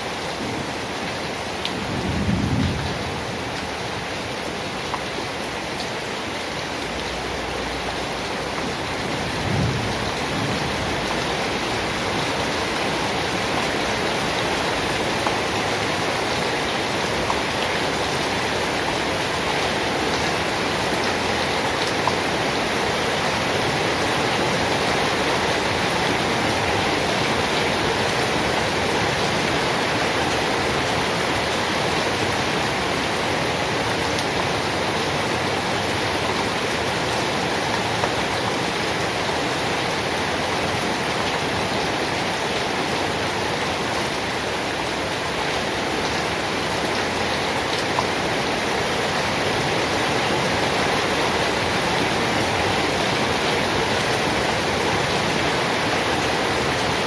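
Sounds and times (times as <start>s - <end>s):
steady rain hiss: 0.0s - 57.0s
thunder rumble: 1.9s - 3.4s, 9.2s - 11.6s.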